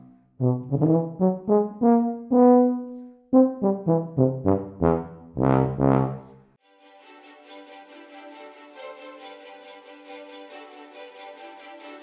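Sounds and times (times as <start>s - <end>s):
tuba playing notes: 0.4s - 6.3s.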